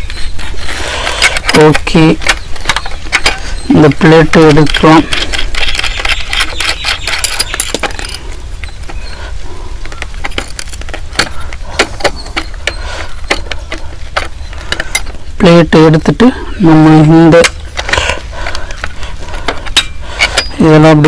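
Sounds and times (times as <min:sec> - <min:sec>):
metal clicks and clinks: 0:01.1 - 0:09.0.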